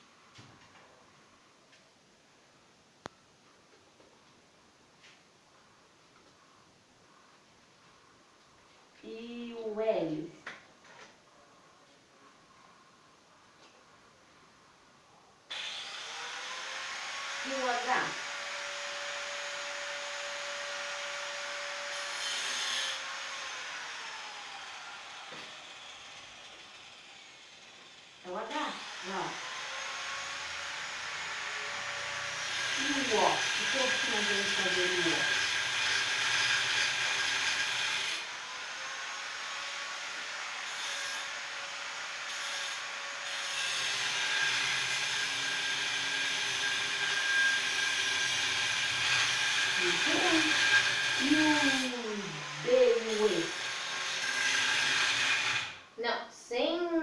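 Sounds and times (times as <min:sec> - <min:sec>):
small electric motor whirring: 0:15.5 - 0:55.8.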